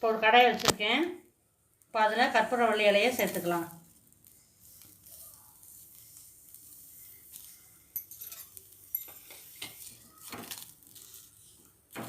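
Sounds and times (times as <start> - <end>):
leaves sizzling in a pan: 1.8 - 12.0
scraping strokes in a pan: 2.6 - 12.0.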